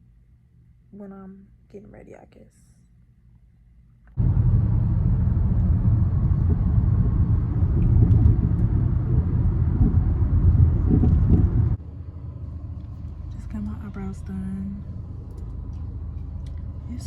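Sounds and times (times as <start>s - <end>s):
loud low rumble: 4.2s - 17.0s.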